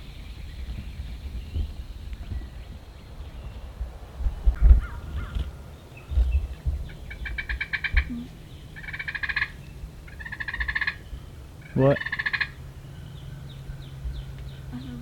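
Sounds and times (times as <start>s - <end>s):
low thumps: 3.8s - 5.5s, 6.1s - 8.3s
turkey gobbling: 6.9s - 8.2s, 8.8s - 12.7s.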